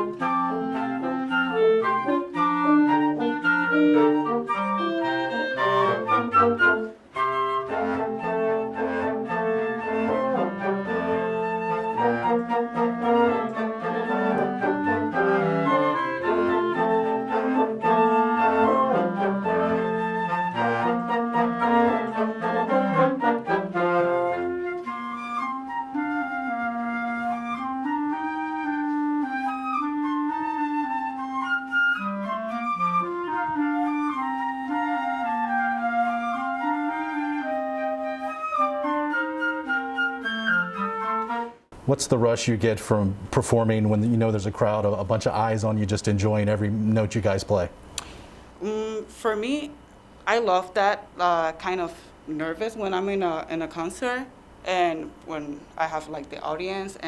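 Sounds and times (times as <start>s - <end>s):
military band music: 0.0s - 42.2s
held woodwind lines: 0.0s - 57.0s.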